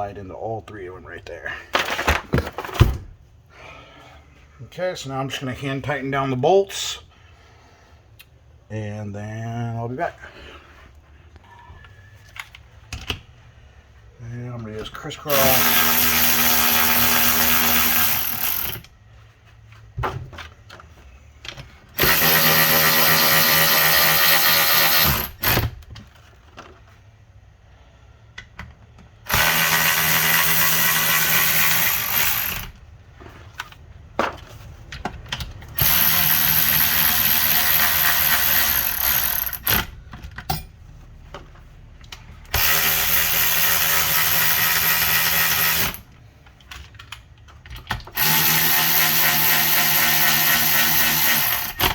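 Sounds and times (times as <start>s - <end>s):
power drill motor whine: 22.0s - 25.6s, 29.3s - 32.7s, 48.2s - 51.8s.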